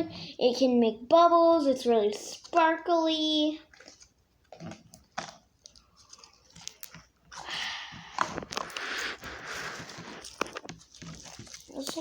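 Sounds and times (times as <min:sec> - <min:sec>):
slime crunching and clicking: 0:03.7 - 0:07.4.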